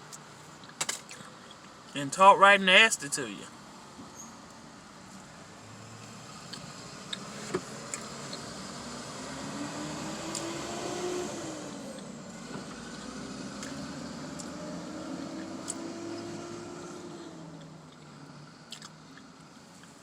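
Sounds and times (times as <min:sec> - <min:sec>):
steady road noise: 0:00.0 - 0:20.0
passing vehicle engine: 0:05.4 - 0:19.9.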